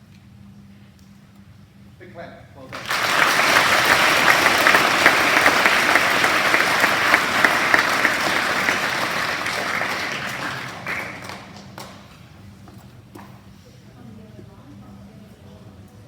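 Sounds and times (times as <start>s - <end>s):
audience applauding: 2.7s - 12.3s.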